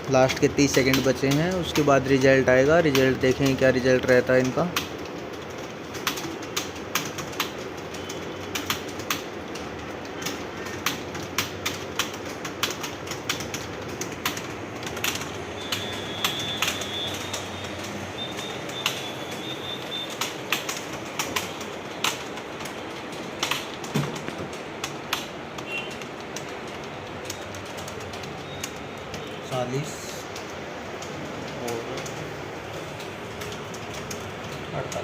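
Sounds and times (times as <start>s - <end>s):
fast typing on keyboards: 0.0s - 35.0s
steady background noise: 0.0s - 35.0s.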